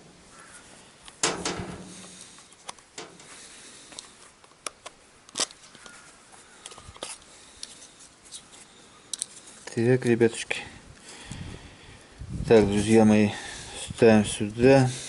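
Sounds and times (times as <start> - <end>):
small parts clicking and knocking: 9.1 - 9.8.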